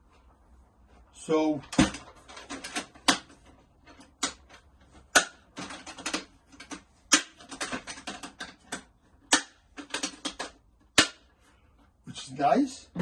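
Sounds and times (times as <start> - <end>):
hard plastic clicks and clatter: 1.7 - 11.1.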